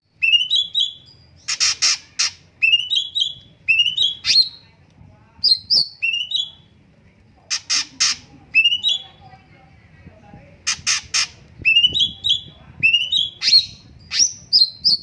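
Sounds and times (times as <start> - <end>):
harsh rasping bird call: 1.4 - 4.6, 7.5 - 8.8, 10.7 - 11.4.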